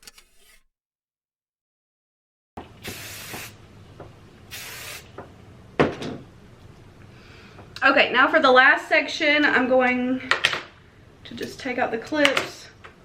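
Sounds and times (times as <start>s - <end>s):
hair spray can hissing: 2.8s - 3.5s, 4.5s - 5.1s.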